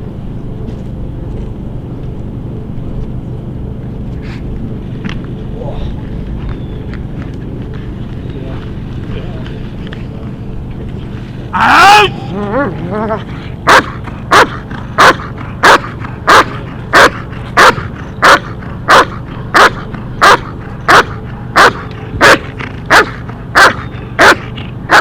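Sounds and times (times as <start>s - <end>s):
dog whining: 11.6s - 25.0s
dog barking: 13.7s - 25.0s.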